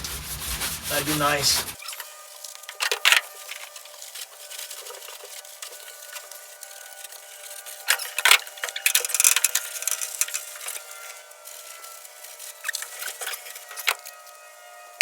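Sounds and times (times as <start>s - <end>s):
hand scraping and rubbing: 0.0s - 1.8s.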